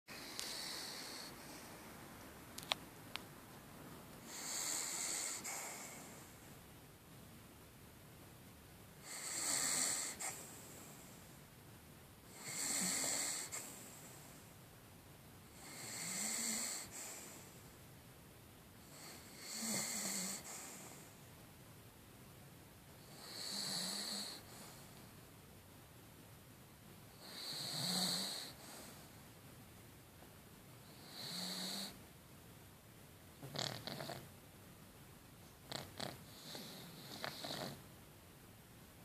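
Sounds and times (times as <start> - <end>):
dog snoring: 0.1 - 1.8, 4.2 - 6.4, 9.0 - 11.2, 12.3 - 14.4, 15.5 - 17.6, 18.8 - 21.1, 23.0 - 25.0, 27.1 - 29.2, 30.8 - 32.0, 33.4 - 34.3, 35.6 - 37.9.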